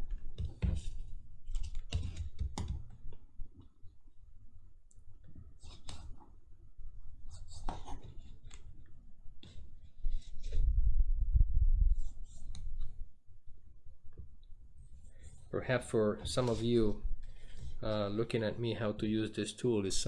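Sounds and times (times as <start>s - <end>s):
cardstock paper handled: 15.0s - 19.1s.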